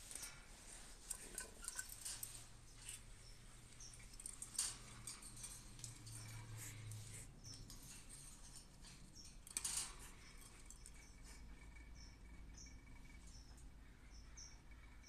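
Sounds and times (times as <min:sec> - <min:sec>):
faint high bird chirps: 0:10.2 - 0:15.0.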